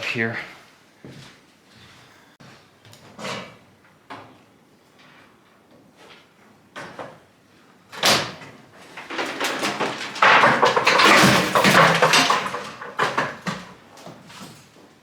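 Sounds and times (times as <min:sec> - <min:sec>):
furnace scraping and rattling: 0:05.0 - 0:14.9.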